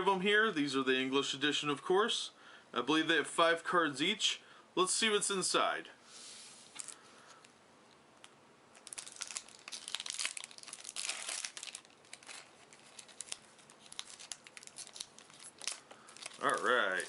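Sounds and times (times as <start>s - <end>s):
foil wrapper tearing and crinkling: 8.8s - 17.0s.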